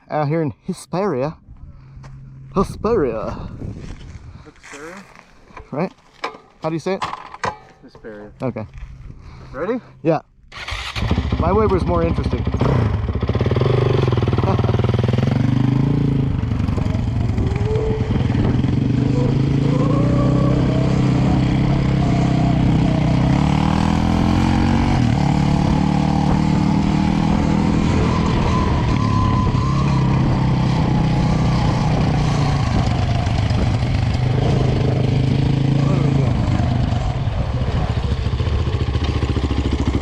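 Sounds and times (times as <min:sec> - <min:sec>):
motorbike engine running: 0:10.7 - 0:40.0.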